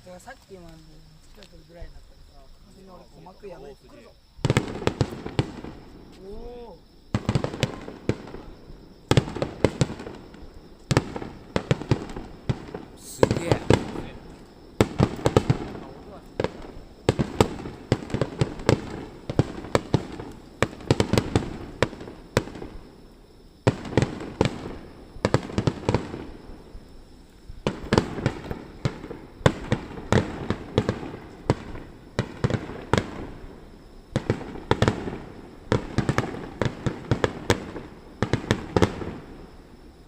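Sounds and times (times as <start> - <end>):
fireworks bangs and crackles: 4.4 - 40.0.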